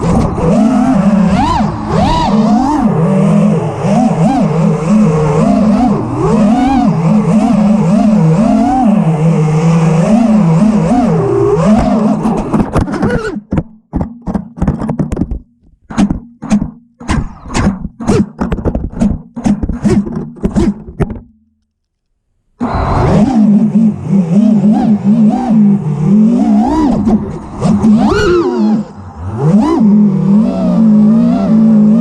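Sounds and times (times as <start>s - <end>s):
quadcopter motors whining: 0.0s - 13.1s, 22.6s - 32.0s
short knocks and choppy bursts: 11.8s - 21.3s.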